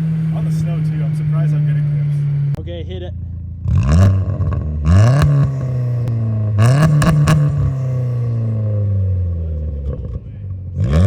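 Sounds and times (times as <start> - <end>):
car engine revving: 0.0 - 11.0
exhaust cracks: 0.0 - 11.0.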